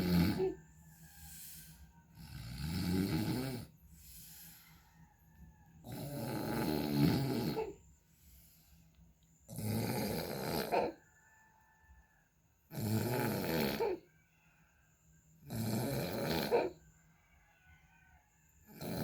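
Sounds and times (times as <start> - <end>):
person snoring heavily: 0.0 - 4.7, 5.8 - 7.8, 9.5 - 11.0, 12.7 - 14.0, 15.4 - 16.8, 18.7 - 19.0
quiet breathing: 0.0 - 9.6, 11.0 - 12.7.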